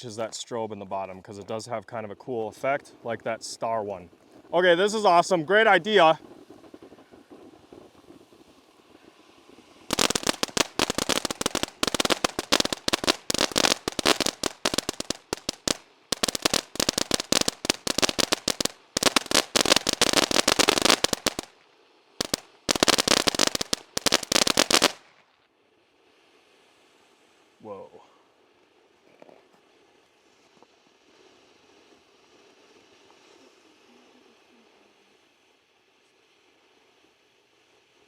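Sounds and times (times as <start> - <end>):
firework fountain crackling: 0.0 - 38.0.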